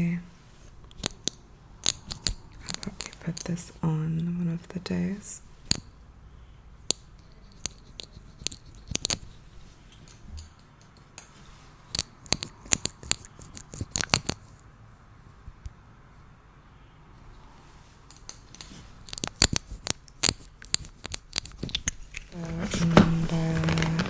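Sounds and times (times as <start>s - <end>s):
cosmetic items clicking and tapping: 0.9s - 4.3s, 18.1s - 24.0s.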